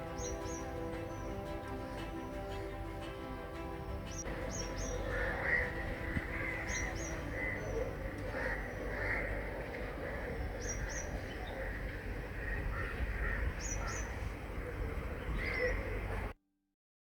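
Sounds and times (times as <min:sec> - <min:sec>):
sharp high-pitched bird calls: 0:00.0 - 0:11.8
softer lower bird calls: 0:00.0 - 0:16.1
steady low rumble: 0:00.0 - 0:16.3.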